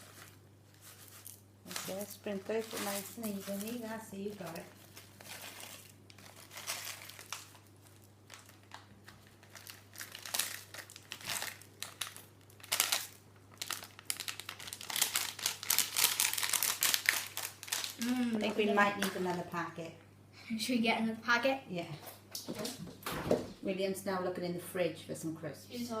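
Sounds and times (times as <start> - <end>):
crisp packet crinkling: 0.0 - 19.5.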